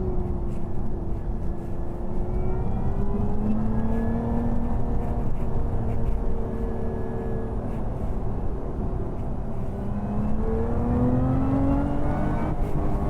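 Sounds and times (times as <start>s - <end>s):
car engine revving from inside cabin: 10.0s - 13.0s.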